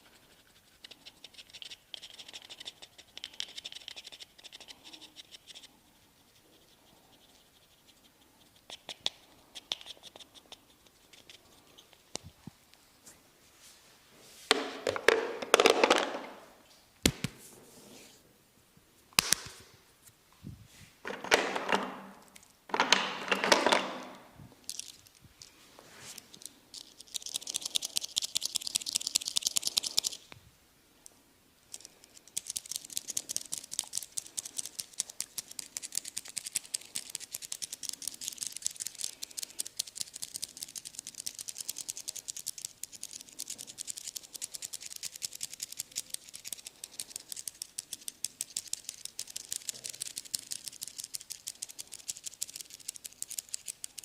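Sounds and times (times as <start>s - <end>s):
hands rubbing skin: 0.0s - 15.8s, 24.8s - 30.2s, 31.7s - 54.0s
sharp slaps: 17.0s - 17.4s, 19.2s - 19.7s
fine crackling ticks: 31.7s - 54.0s.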